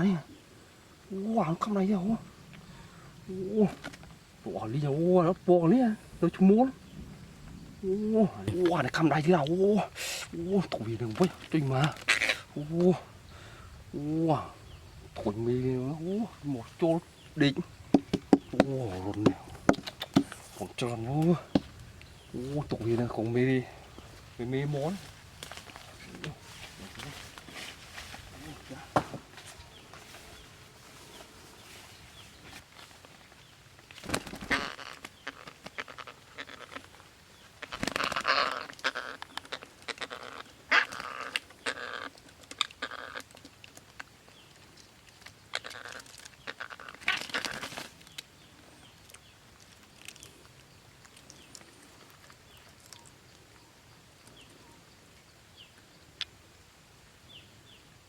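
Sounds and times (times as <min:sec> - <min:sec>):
parrot nestlings squawking: 0:08.6 - 0:13.0, 0:34.4 - 0:37.0, 0:37.6 - 0:43.2, 0:45.5 - 0:47.9.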